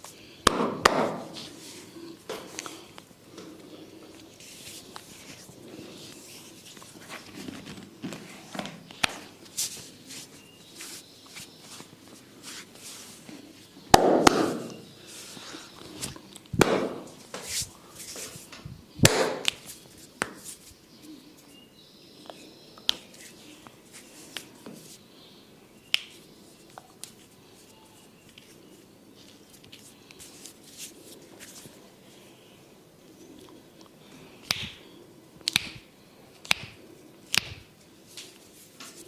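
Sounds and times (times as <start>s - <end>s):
hands slapping head: 0.4s - 1.4s, 13.9s - 14.8s, 16.6s - 17.6s, 19.0s - 20.6s, 25.9s - 26.2s, 34.4s - 34.8s, 35.4s - 38.3s
hands rubbing: 9.0s - 13.7s, 19.4s - 20.8s.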